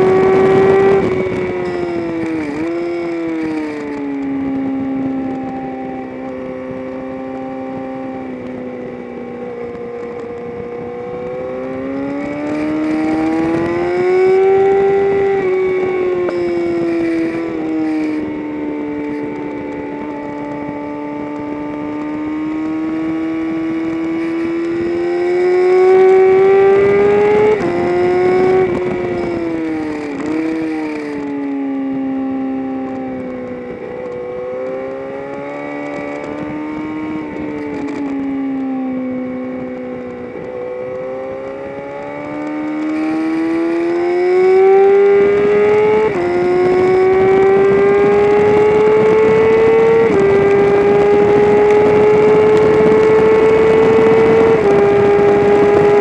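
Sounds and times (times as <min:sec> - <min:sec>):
race car engine revving: 0:09.7 - 0:18.4, 0:21.2 - 0:31.3, 0:39.7 - 0:56.0.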